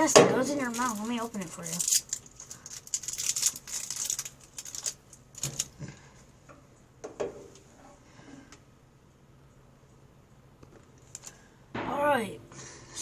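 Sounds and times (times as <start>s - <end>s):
plastic wrapper crinkling: 0.0s - 5.8s.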